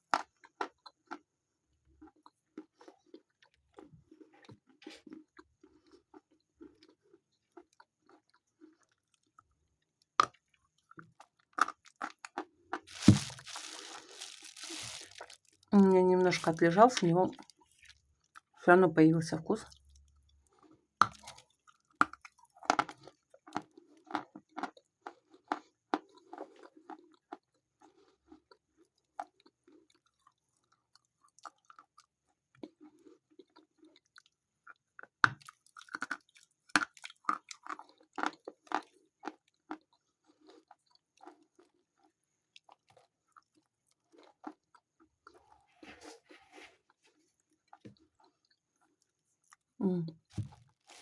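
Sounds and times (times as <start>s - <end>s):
soft chewing: 0.1s - 18.6s, 19.6s - 51.0s
chalk crunching: 12.9s - 15.5s.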